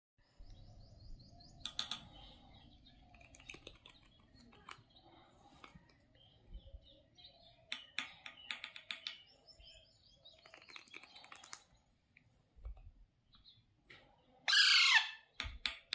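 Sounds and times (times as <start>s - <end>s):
rapid clicky bird calls: 1.3s - 11.9s
parakeet chick begging chirps: 14.5s - 15.3s.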